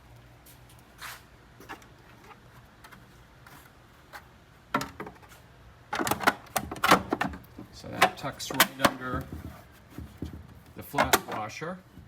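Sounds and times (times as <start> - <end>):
plastic guard clicks and knocks: 4.7 - 5.2, 5.9 - 11.4.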